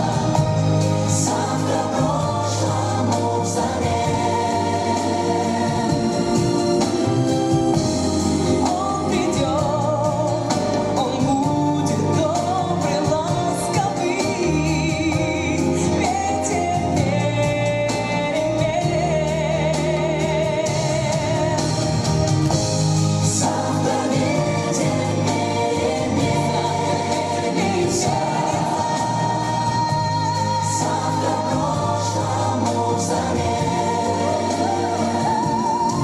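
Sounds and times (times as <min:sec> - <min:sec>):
choir singing with vibrato: 0:00.0 - 0:36.0
sustained keyboard accompaniment: 0:00.0 - 0:36.0.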